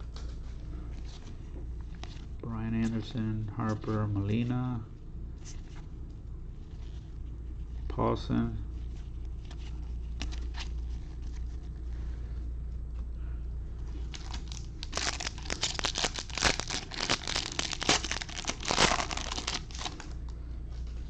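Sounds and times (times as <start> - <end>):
foil wrapper crinkling and tearing: 13.9 - 20.2.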